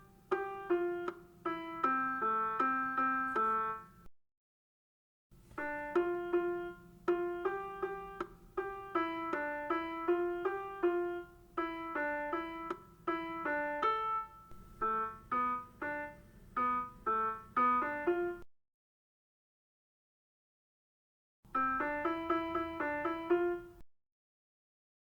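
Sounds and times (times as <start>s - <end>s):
piano-toned keyboard melody: 0.0s - 4.1s, 5.4s - 18.5s, 21.5s - 23.8s.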